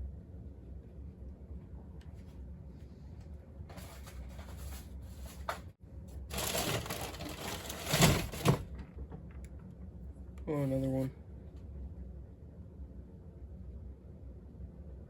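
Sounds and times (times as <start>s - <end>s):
packaging crackles: 6.3s - 8.4s
packaging rustling: 6.3s - 8.6s.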